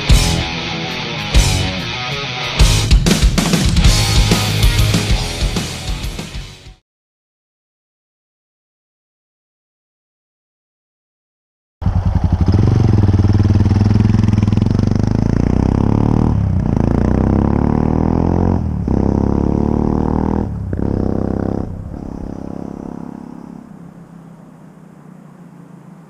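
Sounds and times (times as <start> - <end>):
motorcycle engine running loud: 11.8 - 26.0.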